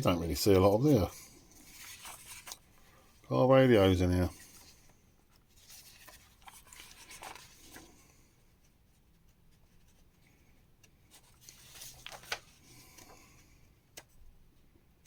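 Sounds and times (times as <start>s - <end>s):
magazine pages rustling: 0.3s - 8.2s, 11.0s - 13.4s
paper crackle: 1.6s - 2.6s, 5.6s - 8.0s, 11.1s - 13.2s.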